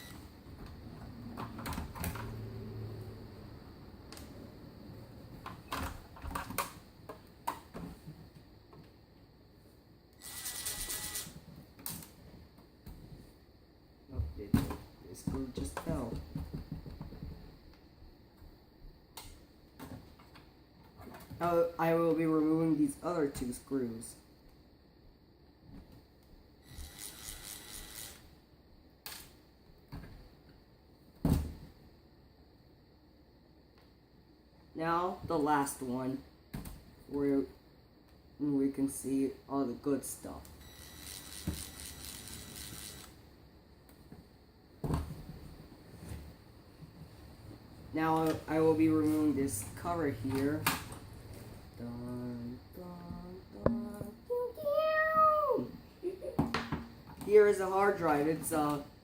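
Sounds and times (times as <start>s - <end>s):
electric screwdriver whirring: 10.2s - 11.3s, 40.8s - 43.1s
power screwdriver whir: 10.2s - 11.3s.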